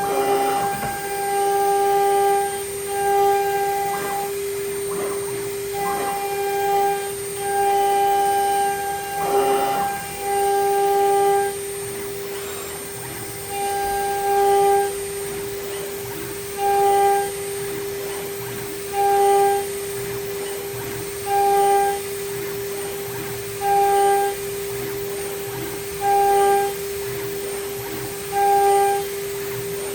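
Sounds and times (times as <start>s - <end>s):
spindle whining: 0.0s - 14.7s
stepper motors whining: 0.0s - 29.9s.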